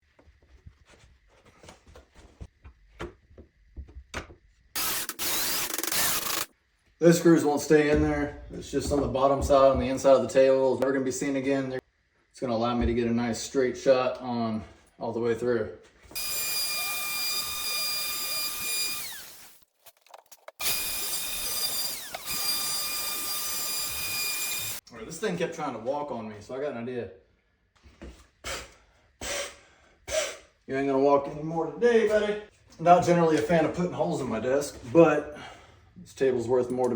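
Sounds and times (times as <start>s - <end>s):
power tool whirring: 4.8s - 6.5s, 16.2s - 19.6s, 20.6s - 24.8s
wood router whining: 4.8s - 6.5s, 16.1s - 19.6s, 20.6s - 24.8s
wood and tools handled: 18.4s - 24.8s.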